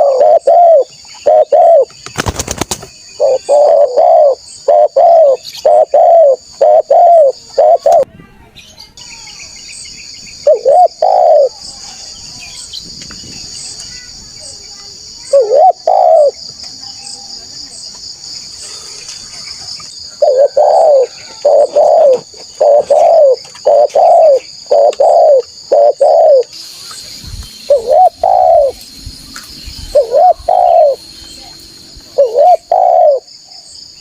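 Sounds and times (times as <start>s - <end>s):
dove cooing: 0.0s - 1.9s, 3.2s - 8.0s, 10.4s - 11.6s, 15.3s - 16.4s, 20.2s - 26.5s, 27.7s - 28.8s, 29.9s - 31.0s, 32.1s - 33.3s
high insect buzz: 20.3s - 34.0s.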